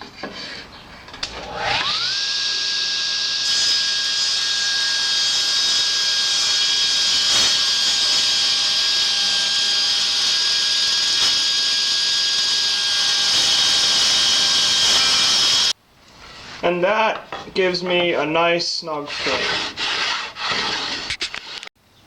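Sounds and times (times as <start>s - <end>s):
table saw whining: 1.2s - 15.8s.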